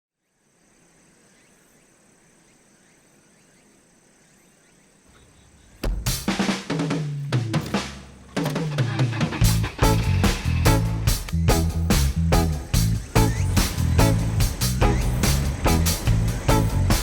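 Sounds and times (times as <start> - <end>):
music with drum kit and bass: 5.8 - 17.0.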